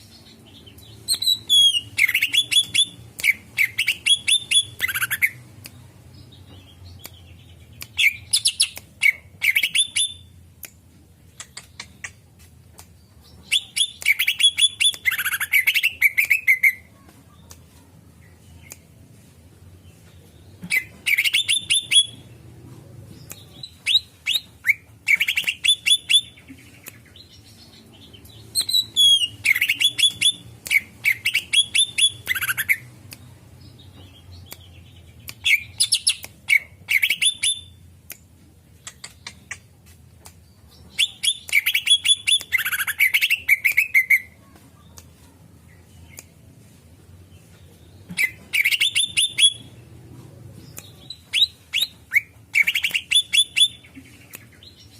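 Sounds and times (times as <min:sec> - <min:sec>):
bird singing sharp repeated notes: 0:00.0 - 0:10.4, 0:13.4 - 0:16.9, 0:20.6 - 0:22.4, 0:23.3 - 0:37.9, 0:40.7 - 0:44.4, 0:48.0 - 0:49.9, 0:50.7 - 0:54.9.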